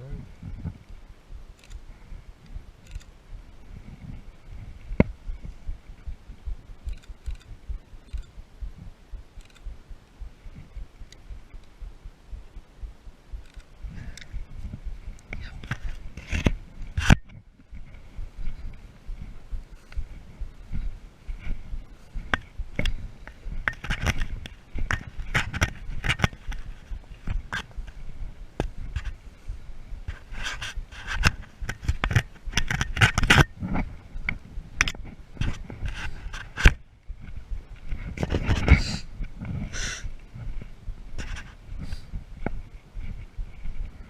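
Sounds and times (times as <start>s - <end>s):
soft low thuds: 0.0s - 44.0s
faint crackles: 0.2s - 44.0s
sharp click: 6.9s - 8.4s, 9.4s - 9.8s.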